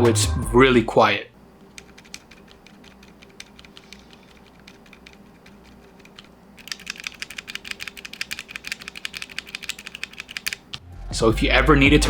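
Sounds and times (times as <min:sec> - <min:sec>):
soft keyboard typing: 0:01.6 - 0:10.8.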